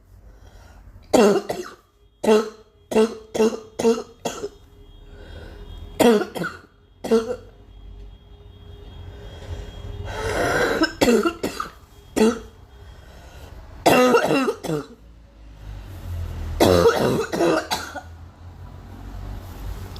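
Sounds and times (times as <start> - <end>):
girl coughing: 1.1 - 4.5, 6.0 - 7.5, 10.3 - 12.5, 13.8 - 15.0, 16.6 - 18.1.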